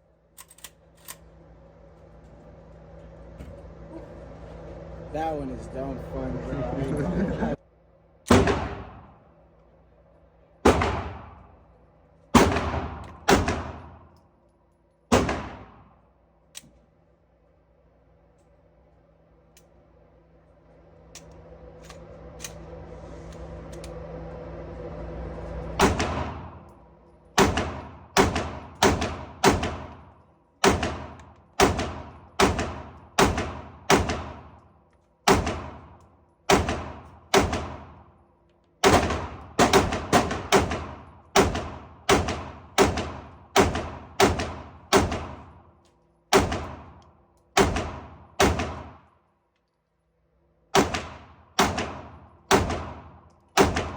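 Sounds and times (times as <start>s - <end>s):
gunshots with ringing tail: 8.3s - 9.2s, 10.6s - 11.6s, 12.4s - 14.1s, 15.1s - 16.0s, 25.8s - 26.6s, 27.4s - 34.6s, 35.2s - 38.0s, 38.8s - 45.6s, 46.3s - 47.0s, 47.6s - 49.0s, 50.8s - 53.9s.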